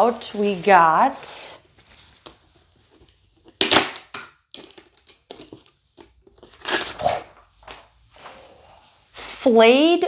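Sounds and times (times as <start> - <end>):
cardboard rustling and scraping: 0.0 - 3.6.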